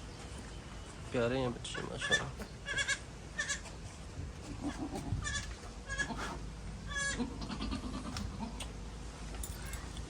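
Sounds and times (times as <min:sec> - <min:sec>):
goat kids bleating: 0:02.0 - 0:03.7, 0:04.5 - 0:08.7.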